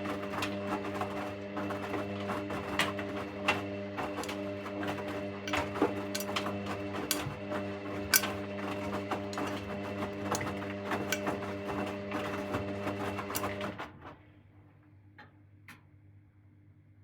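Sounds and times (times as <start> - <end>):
washing machine motor hum: 0.0 - 14.0.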